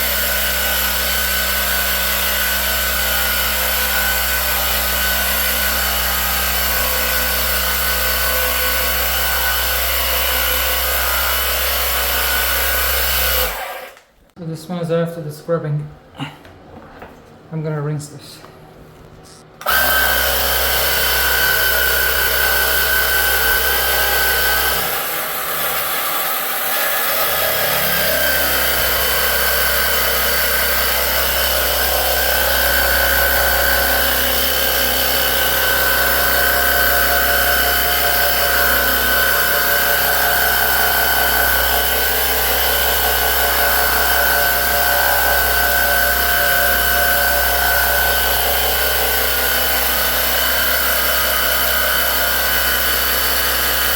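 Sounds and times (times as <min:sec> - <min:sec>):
pressure washer motor whine: 0:19.6 - 0:53.9.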